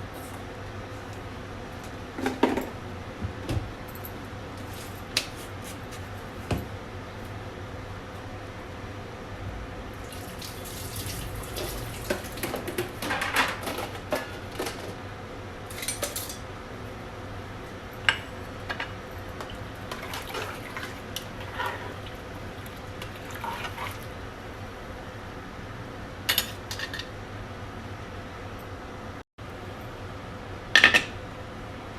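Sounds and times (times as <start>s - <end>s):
water splashing in a sink: 10.0s - 13.0s, 19.4s - 24.2s
dishes and utensils clinking: 15.7s - 16.4s.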